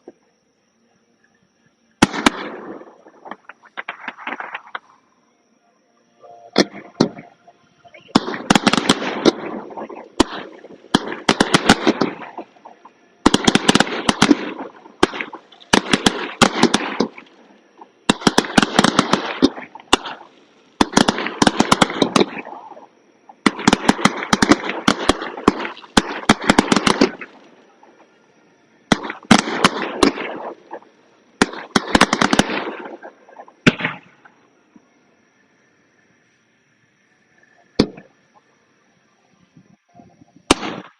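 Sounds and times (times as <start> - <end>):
fireworks crackling: 8.0 - 28.1, 28.9 - 34.3.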